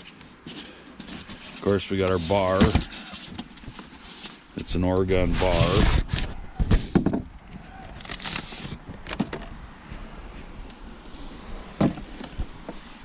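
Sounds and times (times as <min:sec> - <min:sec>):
packaging rustling: 0:07.9 - 0:09.2.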